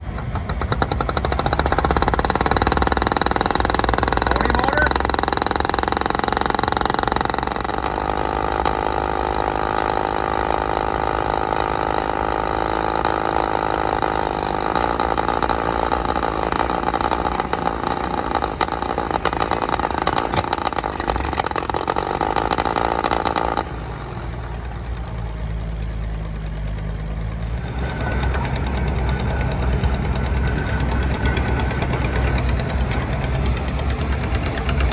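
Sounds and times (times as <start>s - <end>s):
excavator engine running: 0.0s - 34.9s.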